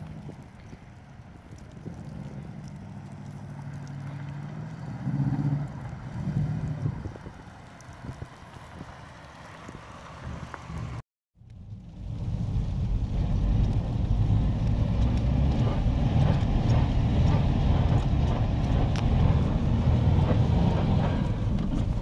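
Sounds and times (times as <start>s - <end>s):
faint clicks: 0.0s - 8.6s
car engine running: 11.6s - 22.0s.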